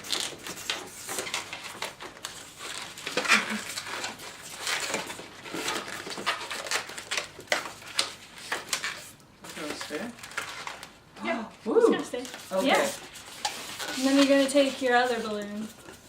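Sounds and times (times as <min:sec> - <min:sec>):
balloons squeaking and rubbing: 0:12.4 - 0:15.7.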